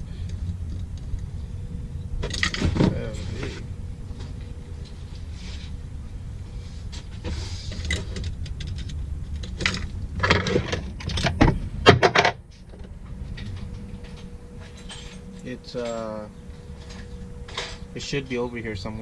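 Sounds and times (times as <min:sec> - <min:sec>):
low steady rumble: 0:00.0 - 0:19.0
metal parts clinking and clattering: 0:13.4 - 0:17.9.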